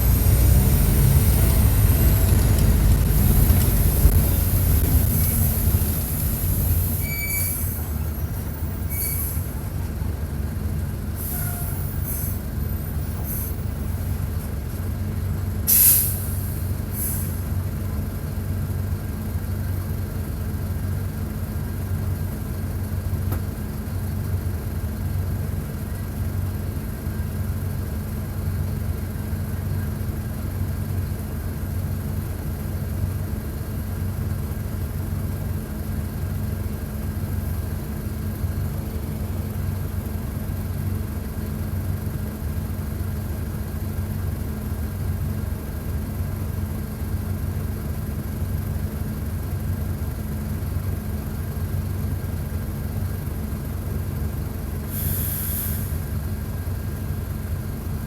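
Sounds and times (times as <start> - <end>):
diesel bus engine running: 0.0 - 58.0
sharp air hiss: 3.2 - 9.6, 15.7 - 17.5, 54.9 - 56.2.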